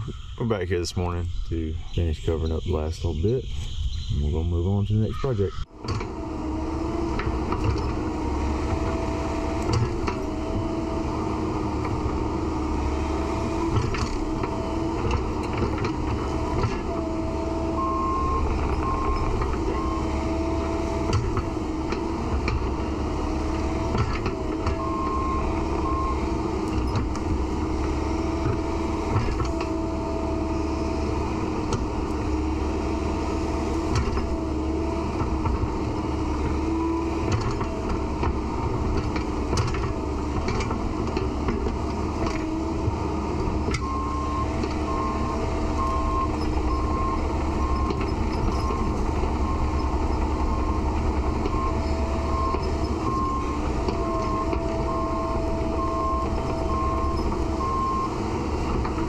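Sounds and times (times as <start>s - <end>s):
diesel excavator engine: 0.0s - 59.0s
travel alarm beeping: 17.7s - 20.2s.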